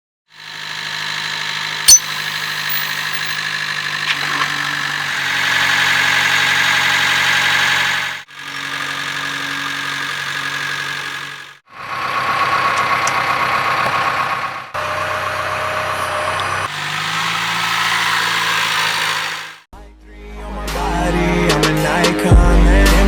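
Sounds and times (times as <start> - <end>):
diesel engine running: 0.3 - 19.7
sharp click: 1.9 - 3.4.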